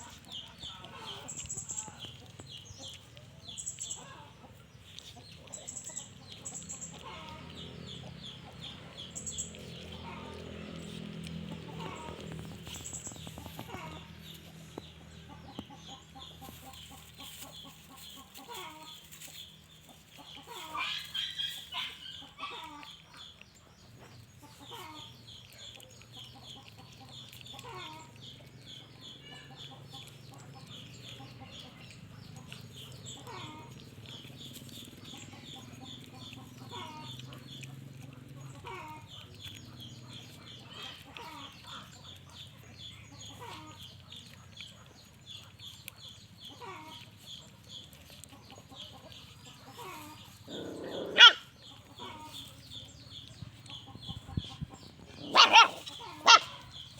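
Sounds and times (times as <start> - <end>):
chickens clucking: 0.0 - 56.9.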